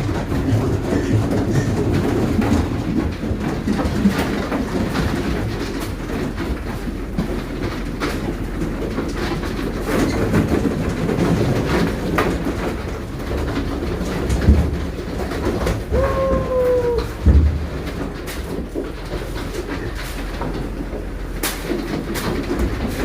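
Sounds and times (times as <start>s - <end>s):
steady clatter: 0.0s - 23.0s
pigs grunting: 0.1s - 2.6s, 15.9s - 17.4s
pig squealing: 15.9s - 17.2s.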